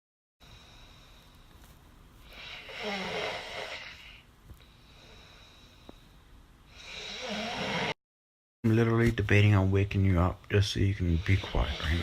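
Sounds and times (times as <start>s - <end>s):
man snoring: 2.4s - 4.2s, 6.7s - 8.0s, 11.1s - 12.0s.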